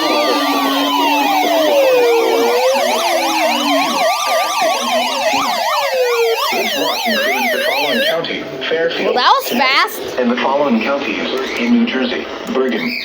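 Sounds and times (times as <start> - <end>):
sirens yelping: 0.0 - 8.2
sirens wailing: 0.0 - 8.4.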